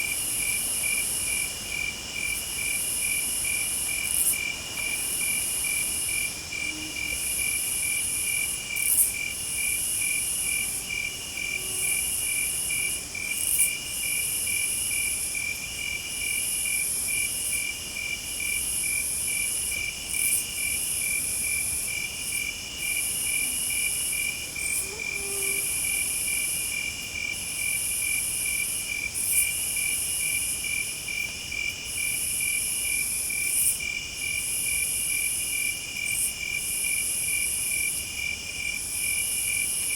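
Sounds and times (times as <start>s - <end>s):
insect chirping: 0.0s - 39.9s.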